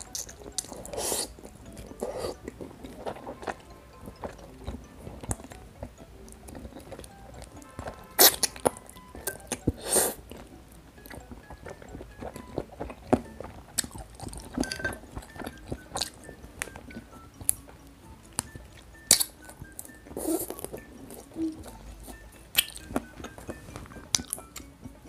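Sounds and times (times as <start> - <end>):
wet mouth clicks: 0.0 - 5.6, 8.2 - 24.7
person chewing food: 0.0 - 25.0
soft background music: 0.0 - 25.0
loud short mouth sounds: 0.8 - 1.4, 2.0 - 2.4, 9.8 - 10.2.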